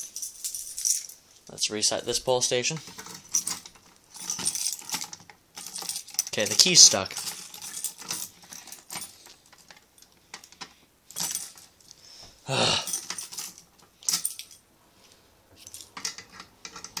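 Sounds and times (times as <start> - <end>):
key rattling in a lock: 0.0 - 1.2, 2.8 - 11.9, 12.9 - 14.6, 15.6 - 17.0
keys jangling: 0.0 - 1.2, 2.8 - 12.0, 12.8 - 14.6, 15.6 - 17.0.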